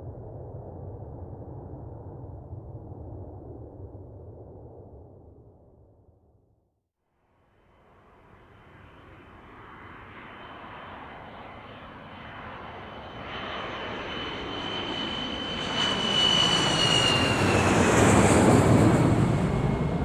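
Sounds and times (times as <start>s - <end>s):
jet airplane passing: 8.1s - 20.0s.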